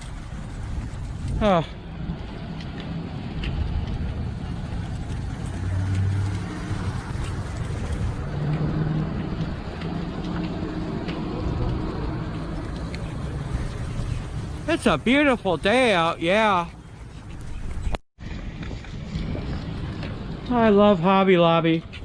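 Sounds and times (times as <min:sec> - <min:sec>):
car engine and road rumble: 0:00.0 - 0:21.0.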